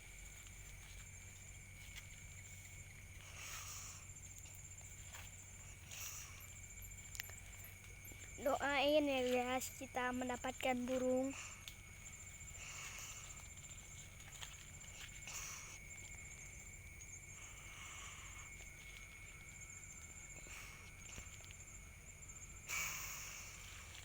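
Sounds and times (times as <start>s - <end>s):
insect high rapid trill: 0.0s - 24.0s
insect low continuous tone: 0.0s - 24.0s.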